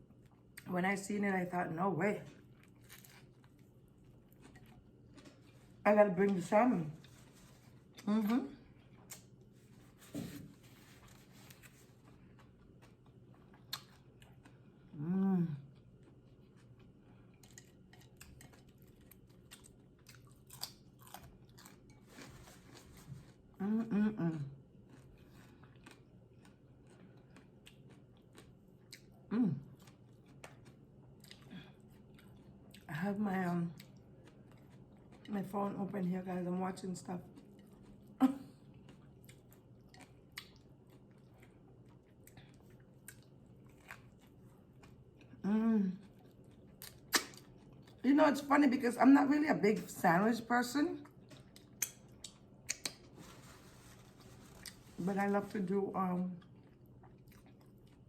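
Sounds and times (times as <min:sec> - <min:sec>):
chewing and crunching sandwich: 0:00.0 - 0:00.7, 0:02.2 - 0:48.5, 0:50.6 - 0:58.0
person humming: 0:15.0 - 0:15.6
wet mouth clicks: 0:46.9 - 0:47.4, 0:51.7 - 0:53.0.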